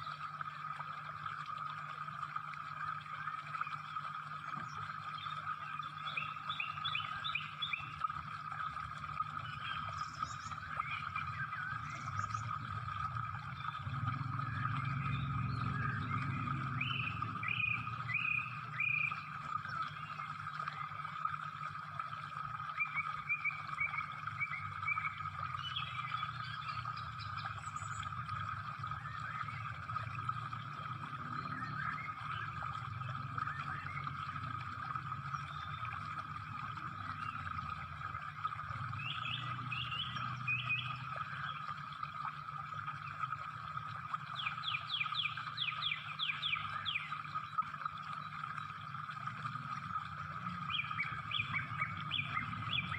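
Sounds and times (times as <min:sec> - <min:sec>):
low hum: 0:00.0 - 0:45.8
birds chirping: 0:02.9 - 0:52.9
chorus of calling animals: 0:08.8 - 0:21.7, 0:48.6 - 0:52.9.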